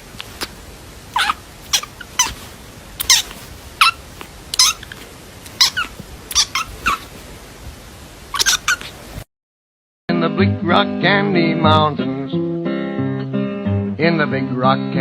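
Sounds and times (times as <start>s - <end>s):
kitten mewing: 0.1s - 7.2s, 8.3s - 9.1s.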